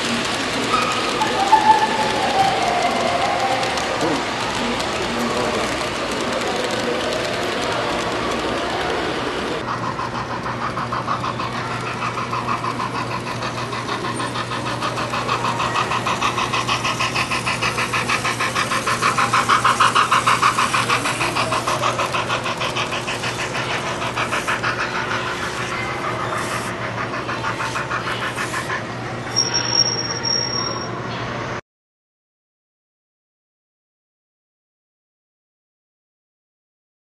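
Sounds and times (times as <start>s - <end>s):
model train rhythmic pulsing: 0.0s - 30.9s.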